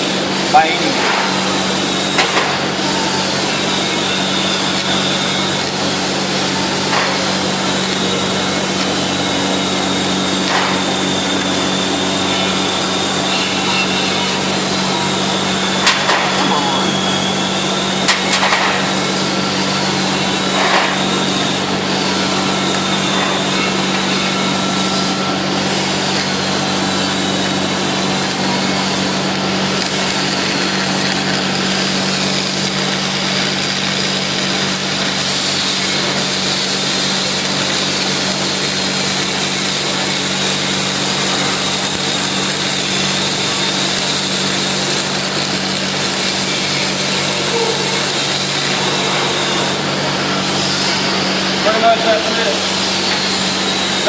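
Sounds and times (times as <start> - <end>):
welding arc crackling and sizzling: 0.0 - 54.0.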